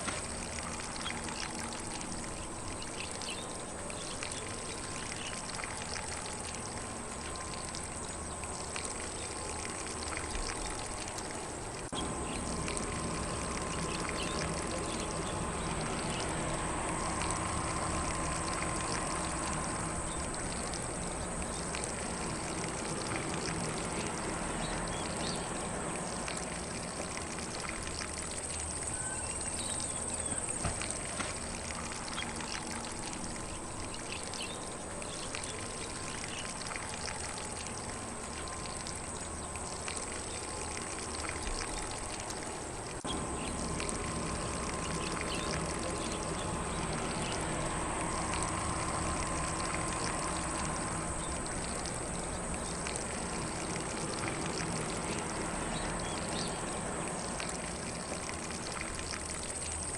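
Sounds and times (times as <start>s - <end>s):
sprinkler spraying water: 0.0s - 59.9s
faint bird chirps: 28.8s - 30.7s.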